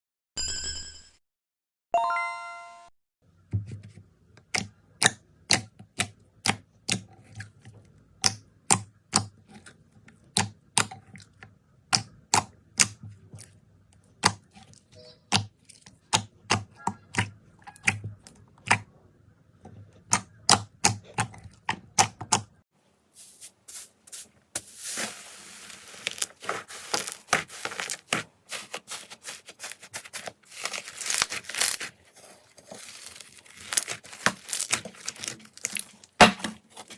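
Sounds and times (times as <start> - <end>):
slime crackling: 24.7 - 36.9.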